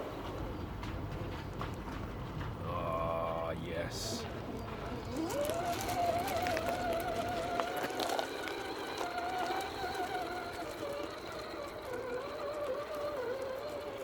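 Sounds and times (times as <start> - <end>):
electric motor and gears whining: 4.2 - 14.0.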